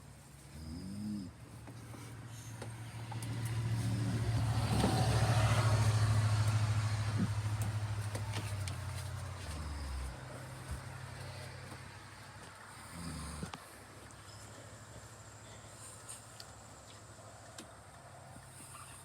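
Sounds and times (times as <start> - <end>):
man snoring: 12.9 - 13.6.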